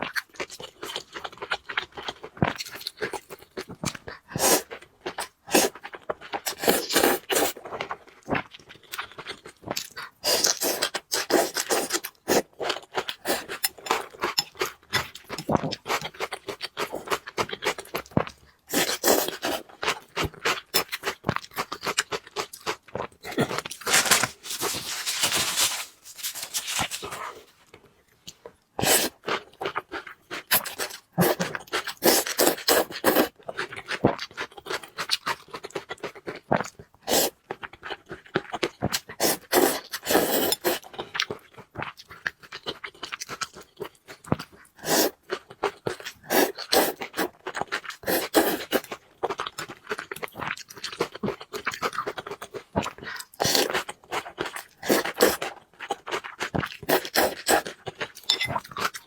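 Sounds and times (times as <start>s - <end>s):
noodles chewed and slurped: 28.8s - 42.8s, 44.2s - 59.0s.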